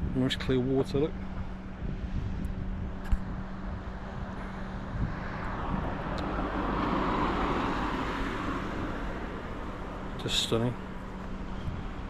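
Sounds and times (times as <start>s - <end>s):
distant engine passing by: 3.2s - 12.0s.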